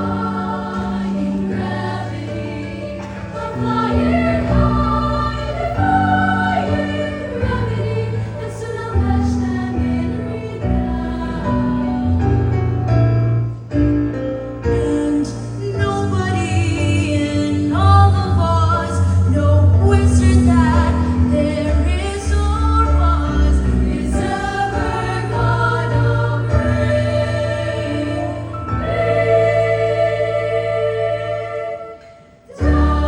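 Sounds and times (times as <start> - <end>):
children's choir singing: 0.0 - 12.3, 21.8 - 33.0.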